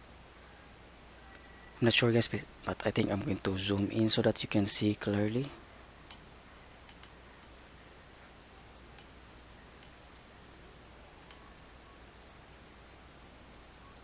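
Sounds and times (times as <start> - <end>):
room hiss: 0.0 - 14.0
faint clicks: 6.1 - 7.6, 8.8 - 9.1, 9.8 - 10.0, 11.2 - 11.5.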